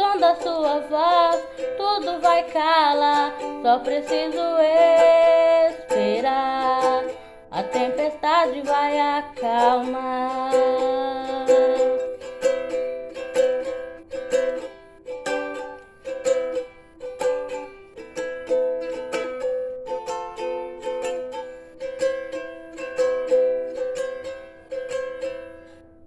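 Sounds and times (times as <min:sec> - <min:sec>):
ukulele strumming chords: 0:00.0 - 0:26.0.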